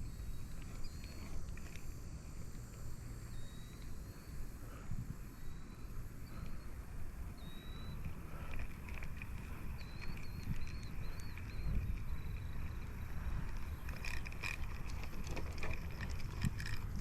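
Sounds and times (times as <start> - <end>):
faint high chirps: 3.0 - 4.5, 5.3 - 8.2, 9.7 - 14.0.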